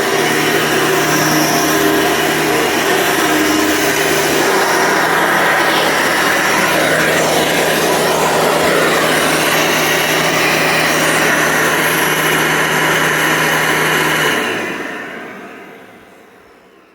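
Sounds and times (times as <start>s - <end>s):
vacuum cleaner running: 0.0s - 16.9s.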